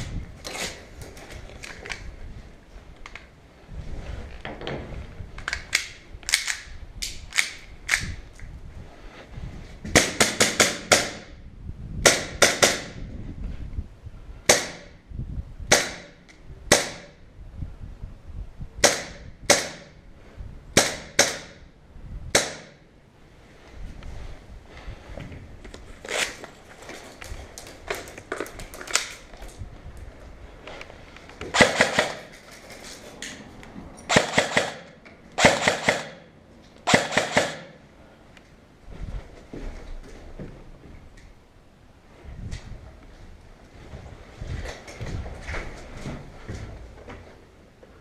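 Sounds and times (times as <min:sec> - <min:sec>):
airsoft guns firing: 0:31.5 - 0:32.3, 0:34.1 - 0:37.8.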